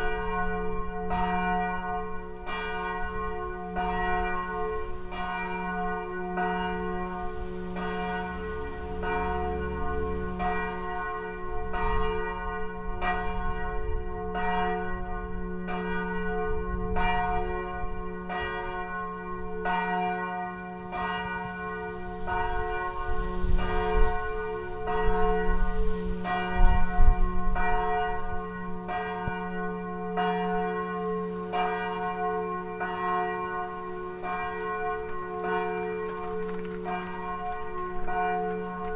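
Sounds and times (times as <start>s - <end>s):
church bell ringing: 0.0s - 38.9s
low rumble: 7.1s - 12.2s.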